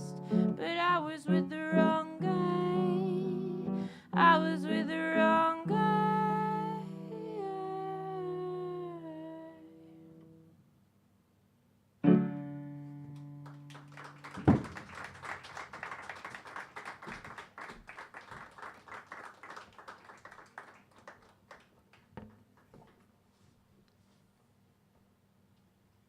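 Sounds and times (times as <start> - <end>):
audience applauding: 13.4 - 22.7
loud thump: 14.4 - 14.7.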